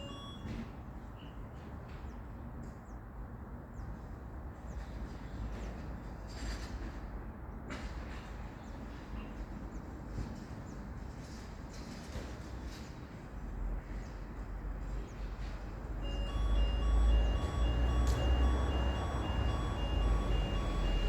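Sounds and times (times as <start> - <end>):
steady low rumble: 16.0 - 21.0.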